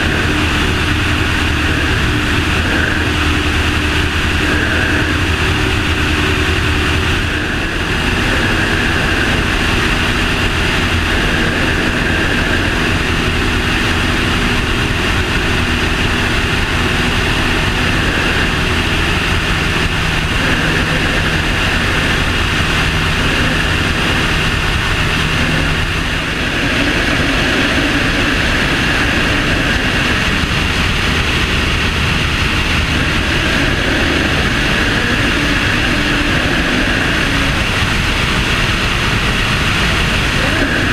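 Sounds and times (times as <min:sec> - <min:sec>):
aircraft engine droning: 0:00.0 - 0:40.9
rushing airflow: 0:00.0 - 0:40.9.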